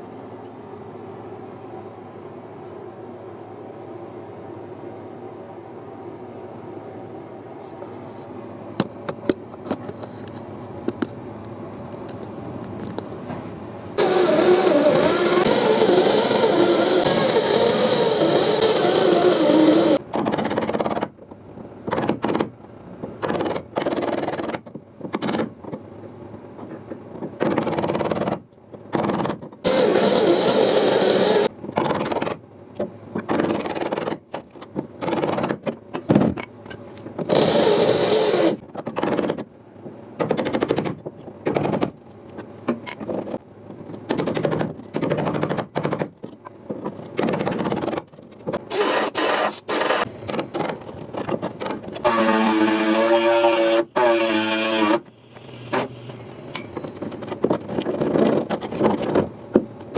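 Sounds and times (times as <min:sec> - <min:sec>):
power tool cutting sheet metal: 0:14.0 - 0:20.0, 0:29.7 - 0:31.5, 0:37.3 - 0:38.6, 0:48.7 - 0:50.1, 0:52.0 - 0:56.0.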